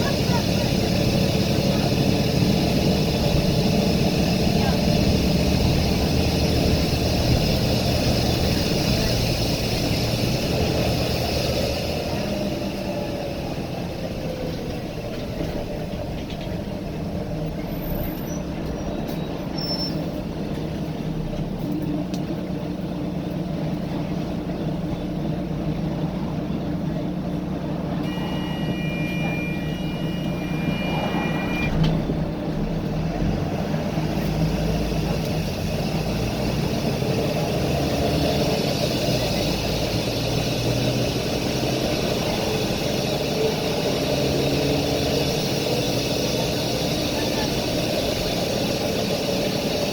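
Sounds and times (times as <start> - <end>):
bus diesel engine running: 0.0 - 49.9
steady high tone: 28.0 - 32.6
loud hiss: 33.6 - 49.9.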